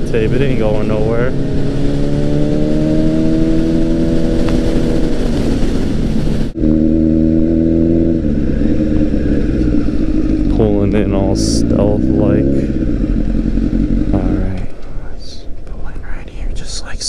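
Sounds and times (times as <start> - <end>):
wind rush: 0.0 - 10.5
motorcycle engine running: 0.0 - 15.5.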